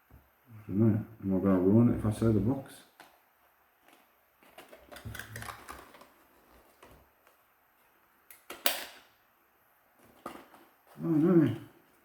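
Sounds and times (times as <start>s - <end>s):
plastic clicks and rattles: 3.9s - 6.2s.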